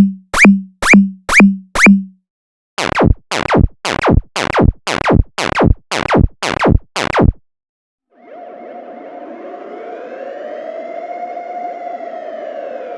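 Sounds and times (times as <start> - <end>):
electronic rising chirps: 0.0 - 2.1
falling pitch sweeps: 8.1 - 12.9.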